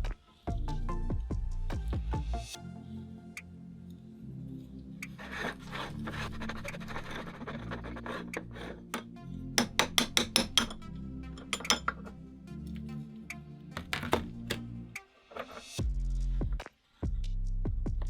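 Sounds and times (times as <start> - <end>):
background music: 0.0 - 16.8
sharp clicks and clinks: 8.4 - 12.2.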